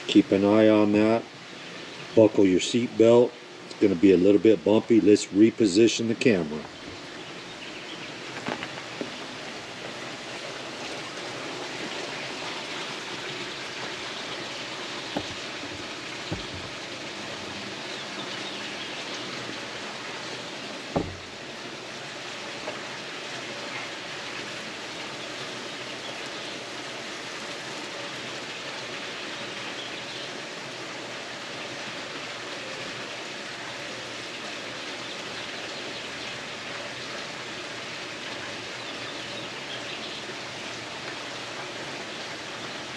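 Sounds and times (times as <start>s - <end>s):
small fire crackling: 8.1s - 10.0s
short knocks: 15.1s - 16.8s, 20.9s - 21.4s.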